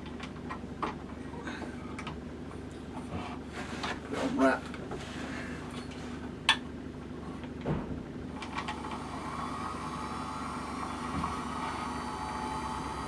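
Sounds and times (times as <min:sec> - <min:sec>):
motor humming and whining: 0:04.6 - 0:13.0.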